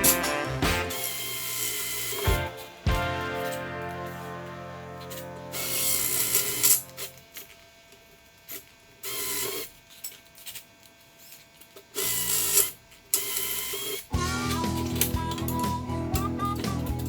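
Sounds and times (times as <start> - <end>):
music: 0.0 - 1.5, 2.1 - 7.1, 14.1 - 17.0
hand tool scraping metal: 0.0 - 2.3.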